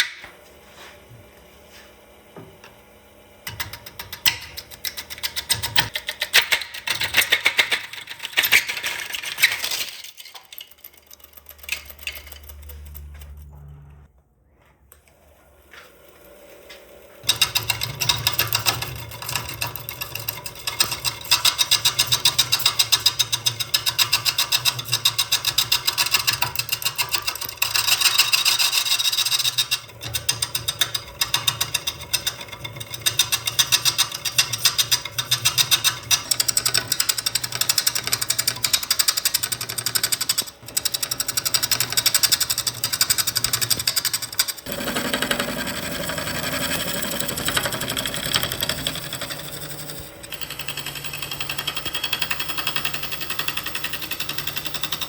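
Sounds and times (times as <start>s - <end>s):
lathe tool cutting wood: 17.2s - 55.0s.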